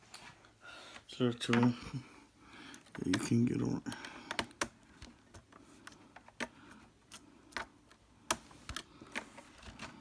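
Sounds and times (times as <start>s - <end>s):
plastic clicks and taps: 2.7s - 9.9s.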